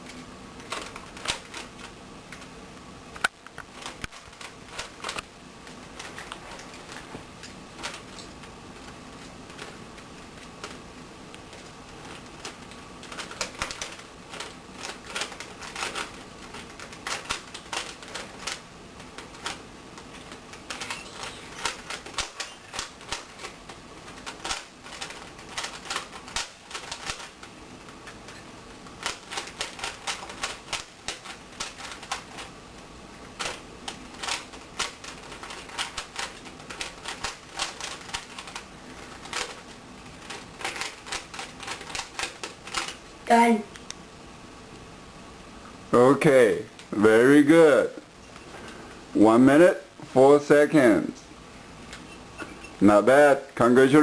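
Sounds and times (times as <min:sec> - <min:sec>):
puzzle cube plastic clicking: 0:00.6 - 0:02.5, 0:03.2 - 0:32.5, 0:33.3 - 0:43.0.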